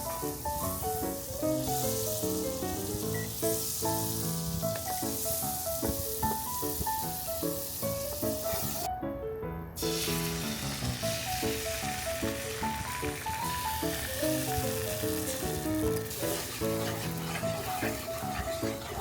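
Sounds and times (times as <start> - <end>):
food sizzling in a frying pan: 0.0 - 8.9, 9.8 - 19.0
light melodic background music: 0.0 - 19.0.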